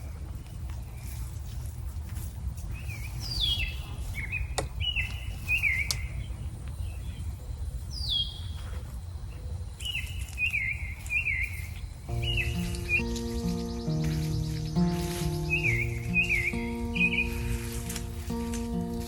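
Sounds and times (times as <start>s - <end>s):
birds chirping: 9.9s - 19.0s.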